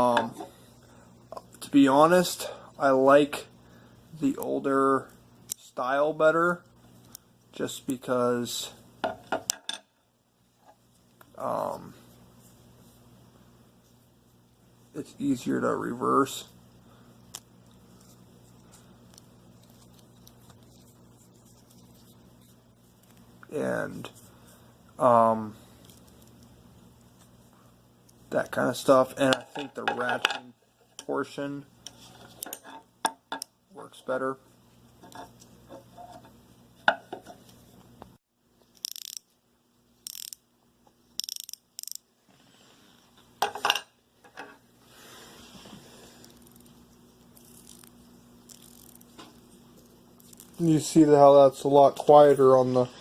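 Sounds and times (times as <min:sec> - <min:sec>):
steady low hum: 0:00.0 - 0:53.0
ratchet wrench lever click: 0:38.8 - 0:39.2, 0:40.0 - 0:40.4, 0:41.2 - 0:42.0.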